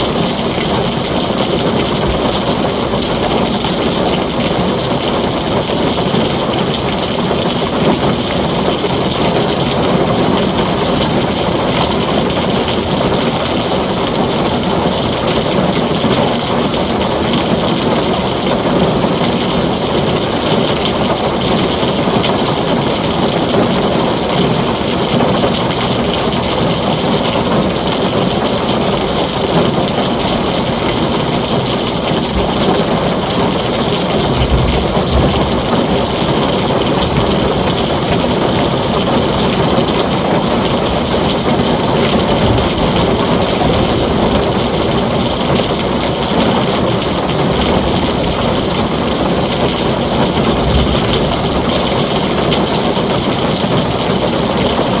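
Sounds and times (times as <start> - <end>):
heavy rain on a tin roof: 0.0 - 55.0.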